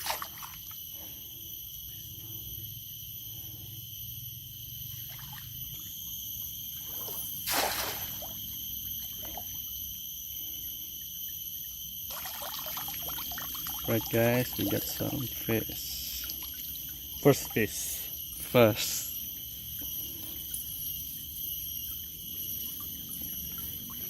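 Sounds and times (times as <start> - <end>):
river water trickling and splashing: 0.0 - 0.7, 12.1 - 17.6.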